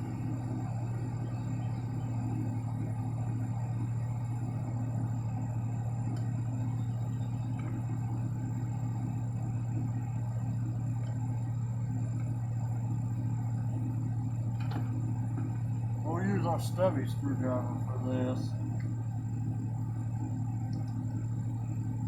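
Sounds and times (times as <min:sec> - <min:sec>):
car engine idling hum: 0:00.0 - 0:22.0
faint clicks: 0:20.7 - 0:21.0.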